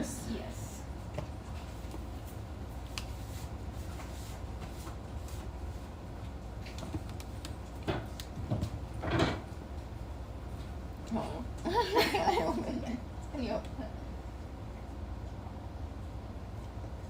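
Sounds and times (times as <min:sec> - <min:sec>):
low steady hum: 0:00.0 - 0:17.0
kitchen clicks and knocks: 0:07.8 - 0:09.5.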